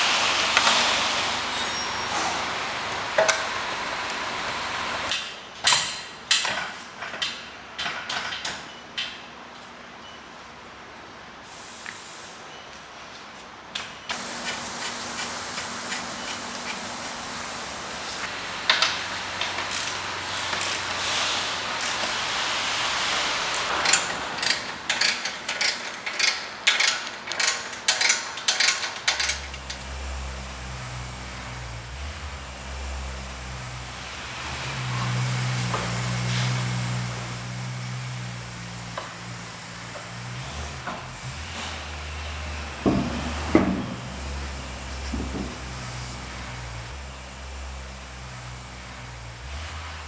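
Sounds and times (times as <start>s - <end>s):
air hissing: 0.0s - 5.1s, 14.1s - 50.0s
air tool ratcheting clacks: 0.3s - 5.2s, 14.1s - 31.8s.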